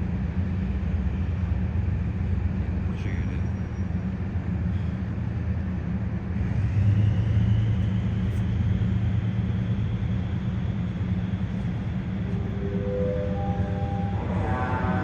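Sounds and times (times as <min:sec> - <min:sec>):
low engine rumble: 0:00.0 - 0:15.0
faint high whine: 0:10.9 - 0:15.0.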